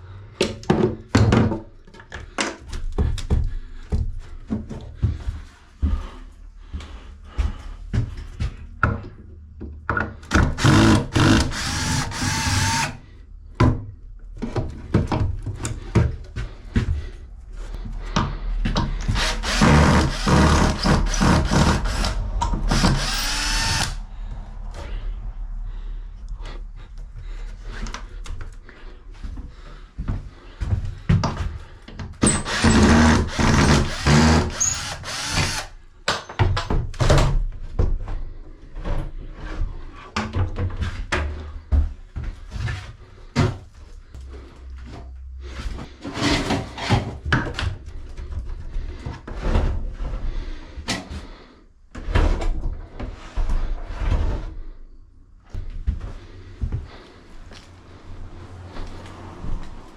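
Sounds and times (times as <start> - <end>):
power drill running: 10.3 - 13.0, 19.1 - 24.0, 32.4 - 35.7.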